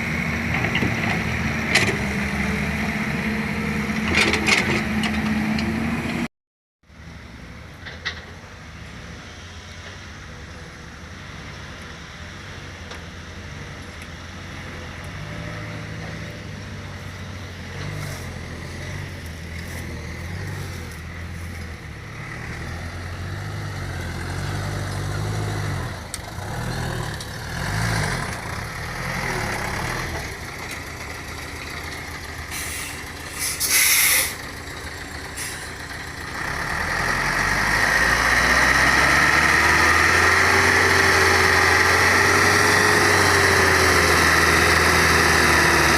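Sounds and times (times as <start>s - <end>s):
heavy diesel engines: 0.0s - 6.3s, 6.9s - 45.9s
loud burst of hiss: 32.5s - 34.4s.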